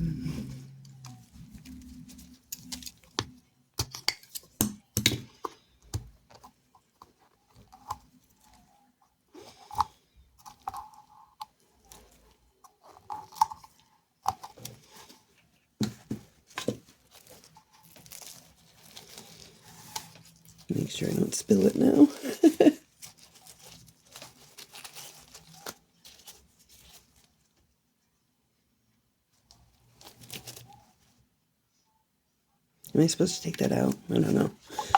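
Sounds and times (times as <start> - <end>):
packaging crinkling: 16.5 - 27.4, 29.9 - 30.9.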